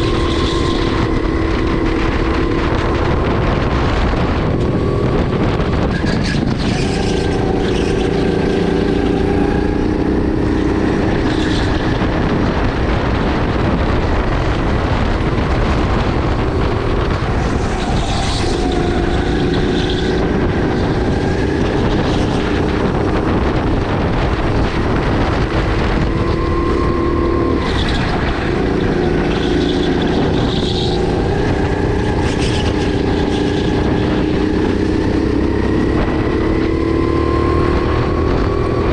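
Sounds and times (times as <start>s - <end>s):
kart engine revving: 0.0s - 38.9s.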